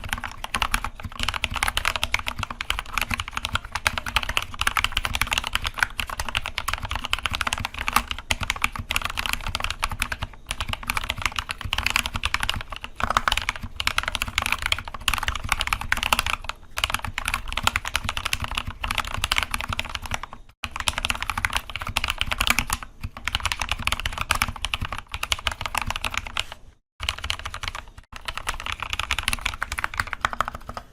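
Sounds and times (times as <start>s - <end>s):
mechanical keyboard typing: 0.0s - 30.9s.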